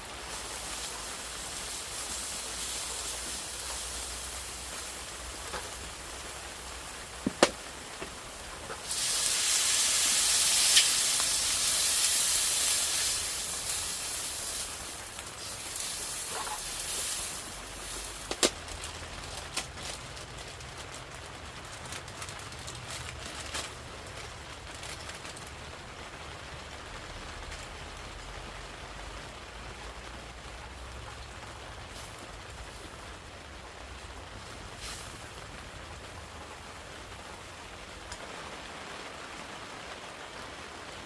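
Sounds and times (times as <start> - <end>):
loud steam hiss: 0.0 - 18.6, 34.7 - 35.4
rain falling: 0.0 - 41.0.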